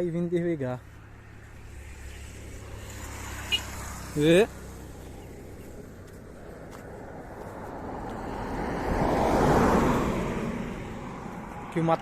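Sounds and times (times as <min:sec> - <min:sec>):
vehicle passing by: 0:00.0 - 0:12.0.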